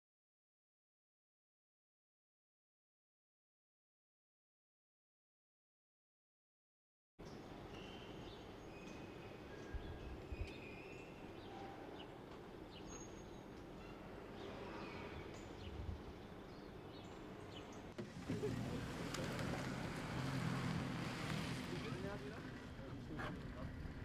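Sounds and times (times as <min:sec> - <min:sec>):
bird chirps: 0:07.2 - 0:17.9
environmental background noise: 0:07.2 - 0:24.0
wind: 0:07.2 - 0:24.0.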